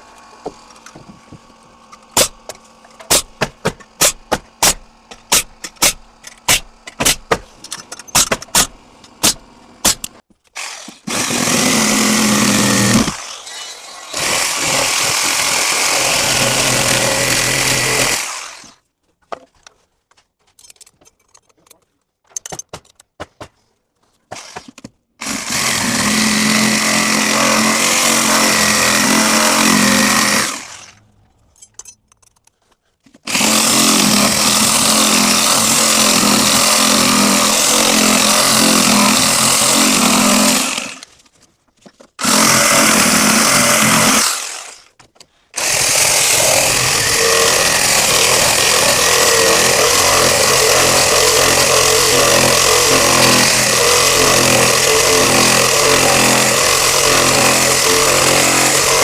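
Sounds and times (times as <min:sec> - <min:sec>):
power saw cutting: 0:08.1 - 0:18.8, 0:24.3 - 0:31.0, 0:33.2 - 0:41.1, 0:42.2 - 0:45.0, 0:45.6 - 0:59.0.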